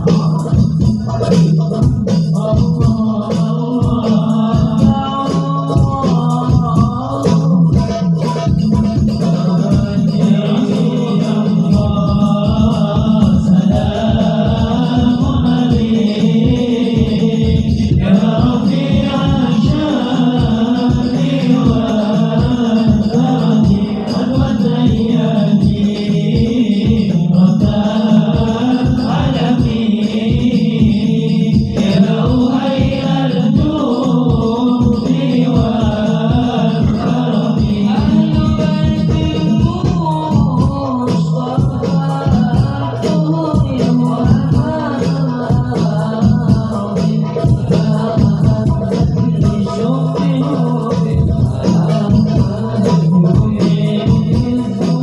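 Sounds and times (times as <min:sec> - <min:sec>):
person singing devotional song: 0:00.0 - 0:55.0
steady percussion beat: 0:00.0 - 0:55.0.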